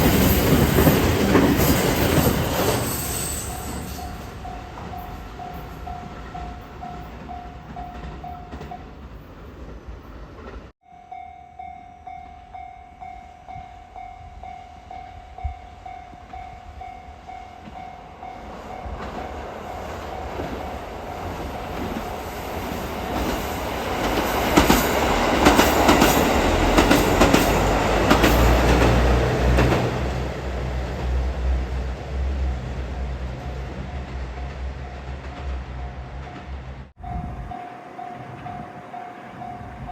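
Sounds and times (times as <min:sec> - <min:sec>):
diesel train passing: 0:00.0 - 0:10.7, 0:13.4 - 0:39.9
rail clatter: 0:00.0 - 0:10.7, 0:18.5 - 0:31.6.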